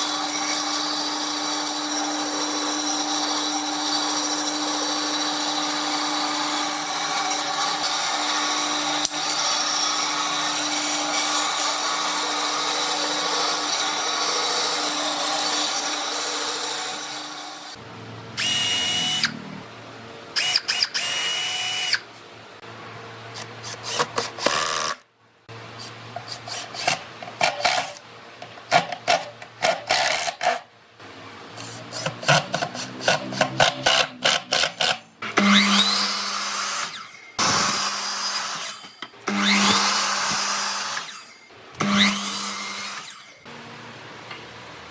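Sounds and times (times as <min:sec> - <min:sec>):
power tool on wood: 0:18.4 - 0:19.5, 0:31.6 - 0:43.5.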